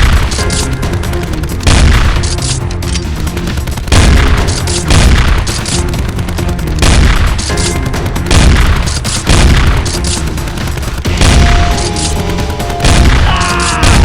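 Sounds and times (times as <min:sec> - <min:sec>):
action soundtrack music: 0:00.0 - 0:14.0
heavy booming hits: 0:01.6 - 0:02.3, 0:03.9 - 0:05.5, 0:06.8 - 0:10.0, 0:11.1 - 0:14.0.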